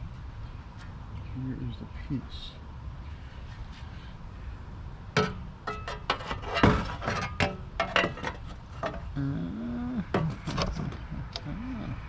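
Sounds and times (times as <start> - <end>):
metal parts knocking and clinking: 5.2 - 9.1.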